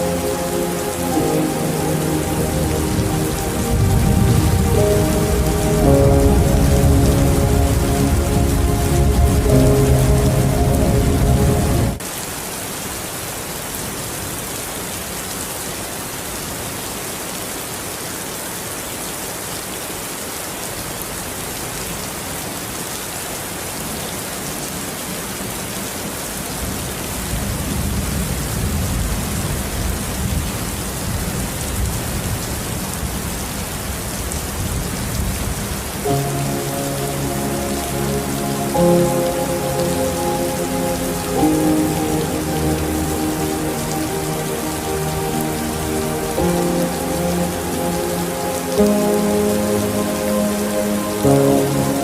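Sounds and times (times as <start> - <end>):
soft music with held notes: 0.0 - 12.0, 36.0 - 52.0
steady rain falling: 0.0 - 52.0.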